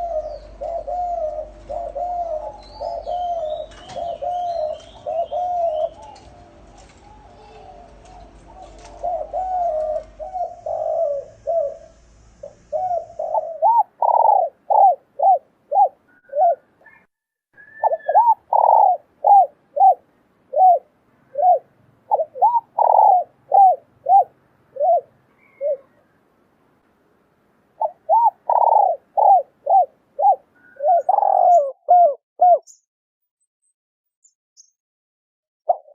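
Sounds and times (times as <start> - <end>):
doves cooing: 0.0 - 26.2, 27.8 - 32.7, 35.7 - 35.9.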